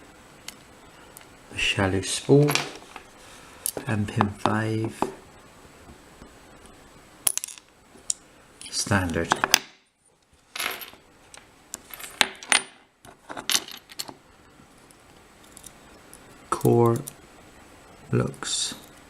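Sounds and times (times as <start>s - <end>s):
small metal parts clinking: 10.5s - 11.0s, 11.8s - 14.2s.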